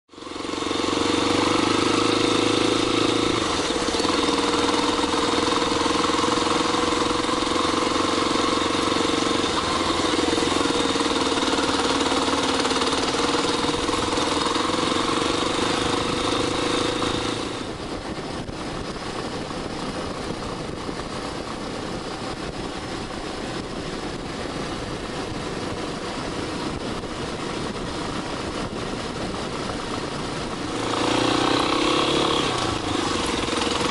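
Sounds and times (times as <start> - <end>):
motorcycle engine running: 0.1 - 33.9.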